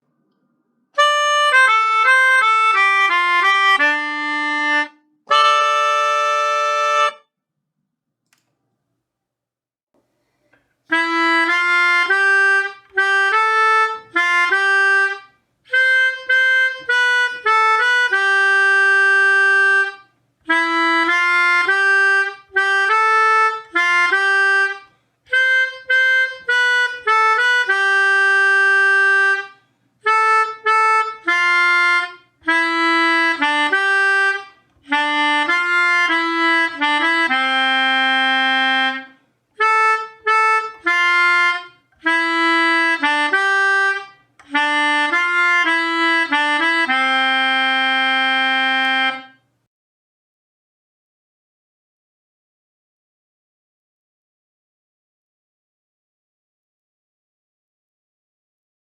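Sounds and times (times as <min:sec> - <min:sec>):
melodica melody: 0:01.0 - 0:07.3, 0:10.9 - 0:49.5.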